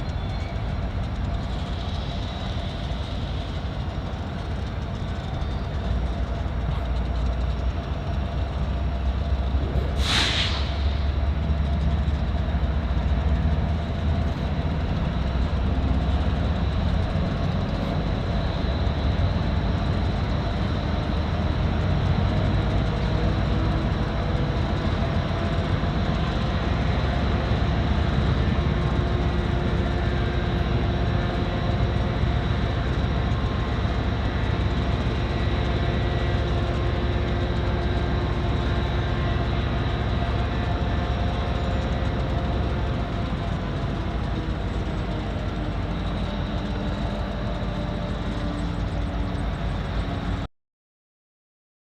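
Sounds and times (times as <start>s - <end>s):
freight train rumbling on rails: 0.0s - 50.5s
sharp hiss: 9.9s - 11.0s.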